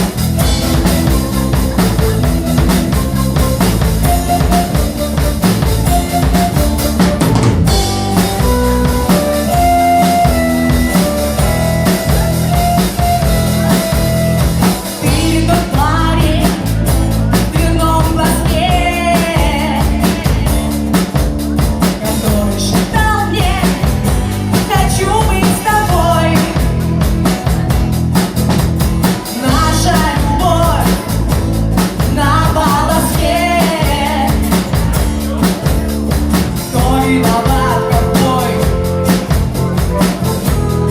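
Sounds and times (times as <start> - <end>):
rock band playing live: 0.0 - 40.9
wavering melody line: 0.4 - 14.8.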